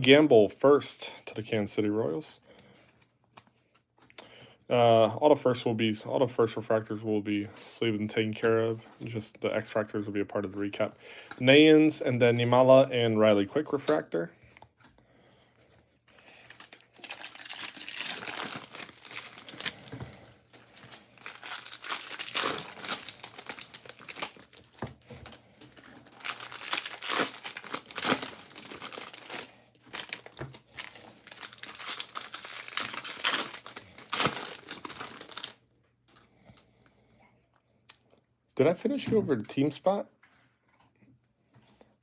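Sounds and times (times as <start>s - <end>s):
foil wrappers crinkling and tearing: 16.1s - 35.6s.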